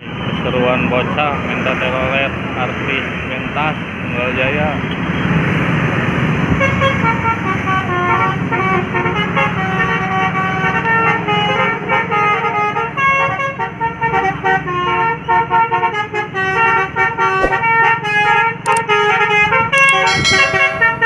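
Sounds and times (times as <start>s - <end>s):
multi-tone air horn melody: 6.6s - 21.0s.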